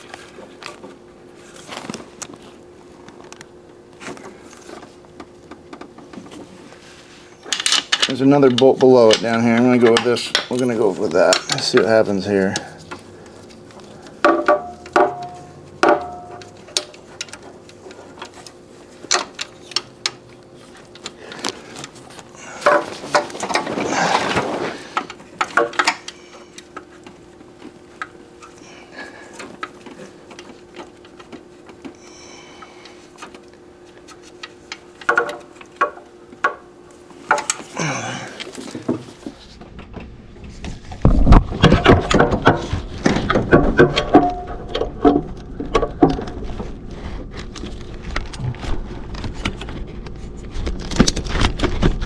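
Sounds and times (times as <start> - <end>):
metal tools clinking: 14.3 - 18.4.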